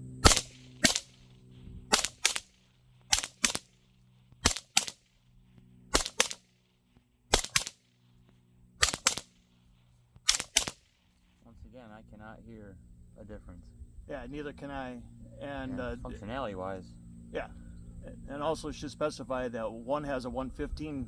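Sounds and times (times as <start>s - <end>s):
suppressed gunshots: 0.2s - 5.3s, 5.9s - 6.6s, 7.3s - 8.0s, 8.8s - 9.4s, 10.2s - 11.4s.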